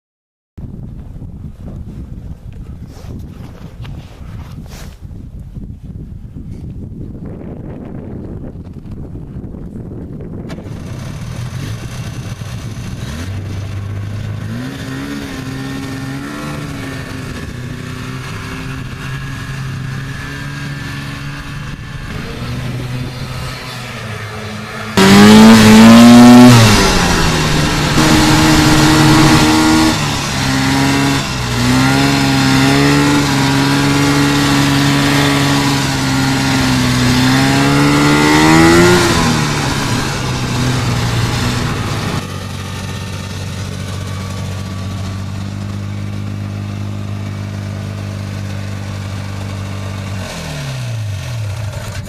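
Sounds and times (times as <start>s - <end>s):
snowmobile engine revving: 10.6s - 52.0s.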